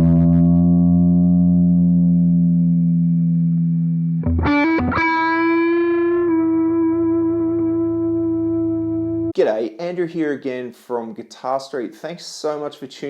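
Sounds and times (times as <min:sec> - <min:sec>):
distorted electric guitar: 0:00.0 - 0:09.3.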